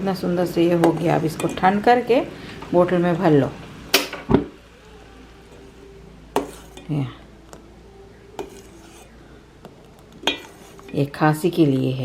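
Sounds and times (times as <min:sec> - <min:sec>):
metal utensil clinking on pan: 0:00.8 - 0:01.8, 0:06.4 - 0:07.0, 0:10.2 - 0:11.1.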